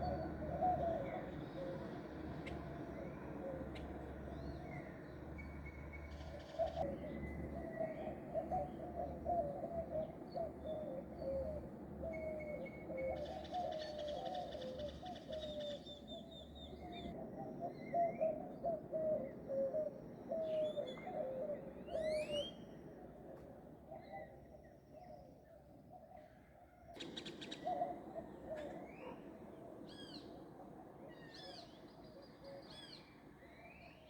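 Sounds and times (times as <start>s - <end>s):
low cooing bird notes: 0.0s - 22.8s, 27.0s - 34.0s.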